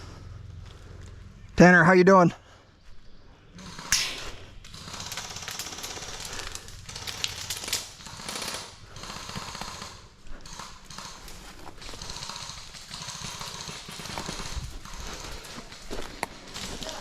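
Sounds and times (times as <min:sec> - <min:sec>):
airsoft gun firing full auto: 0:03.6 - 0:15.3.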